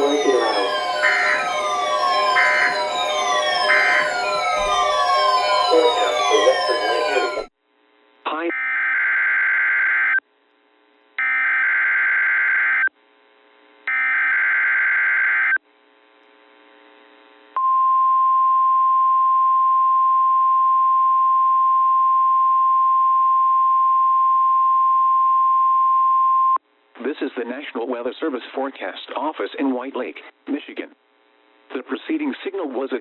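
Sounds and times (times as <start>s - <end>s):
steady warning alarm tone: 0.0s - 7.5s.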